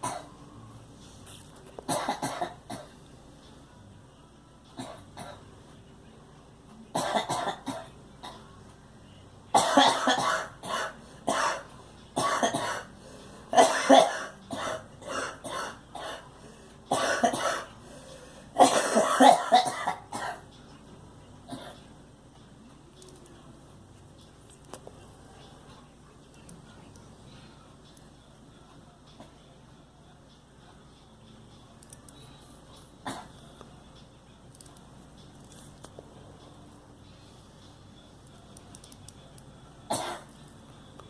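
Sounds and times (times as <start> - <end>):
girl coughing: 0.0 - 0.3, 1.9 - 2.9, 4.8 - 5.4, 7.0 - 8.4, 9.6 - 12.9, 13.5 - 16.2, 16.9 - 17.7, 18.6 - 20.4, 39.9 - 40.3.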